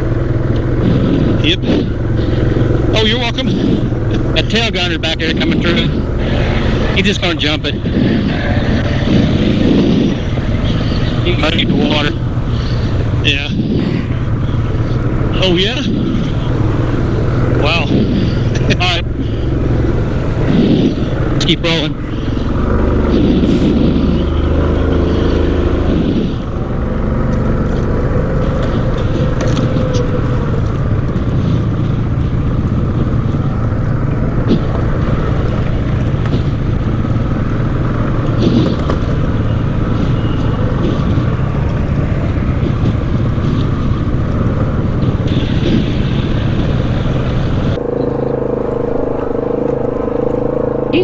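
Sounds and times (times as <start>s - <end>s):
atv engine running: 0.0s - 51.0s
knocks and rattles over bumps: 0.0s - 51.0s.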